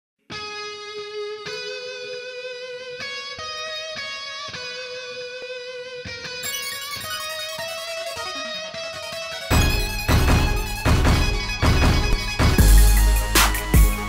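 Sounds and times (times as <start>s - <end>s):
held-note melody: 6.4s - 14.0s.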